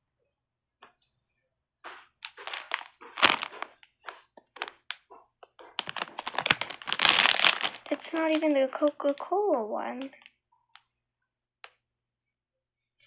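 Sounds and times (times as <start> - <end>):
plastic bag crackling rustles: 2.2 - 5.0, 5.6 - 10.0.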